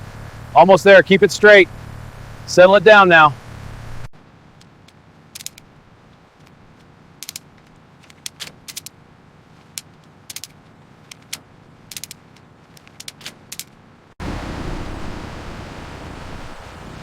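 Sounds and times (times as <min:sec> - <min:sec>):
sharp metallic clicks and clinks: 0:05.3 - 0:05.6, 0:07.2 - 0:09.0, 0:09.7 - 0:13.8.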